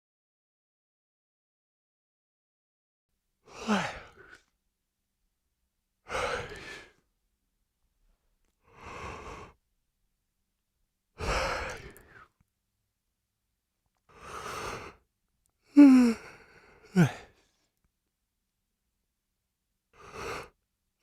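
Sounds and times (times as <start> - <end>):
person yawning: 3.5 - 4.4, 15.7 - 17.4.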